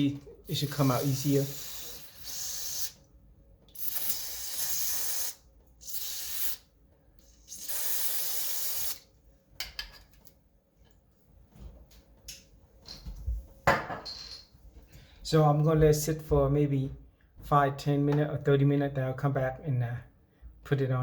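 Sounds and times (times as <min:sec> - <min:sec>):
aerosol can spraying: 0:00.5 - 0:03.0, 0:03.8 - 0:06.7, 0:07.4 - 0:09.1.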